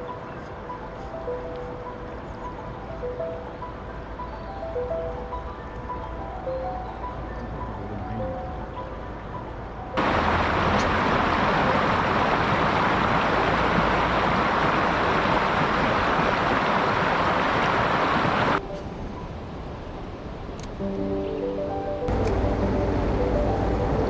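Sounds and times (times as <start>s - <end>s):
stream rushing over rocks: 10.0s - 18.6s.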